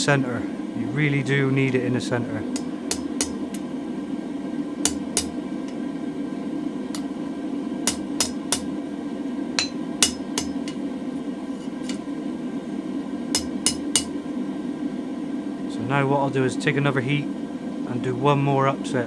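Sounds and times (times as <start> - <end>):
hammer striking steel on anvil: 2.5 - 3.6, 4.8 - 5.8, 7.8 - 8.7, 9.6 - 10.8, 13.3 - 14.2.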